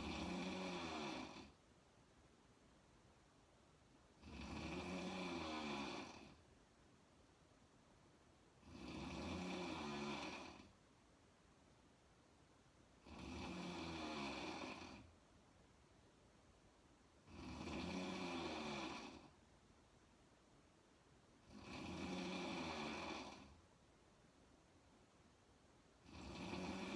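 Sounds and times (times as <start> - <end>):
woman snoring: 0.0 - 1.6, 4.2 - 6.4, 8.6 - 10.8, 13.0 - 15.1, 17.2 - 19.4, 21.4 - 23.6, 26.0 - 26.9
quiet breathing: 8.6 - 10.8, 21.4 - 23.7.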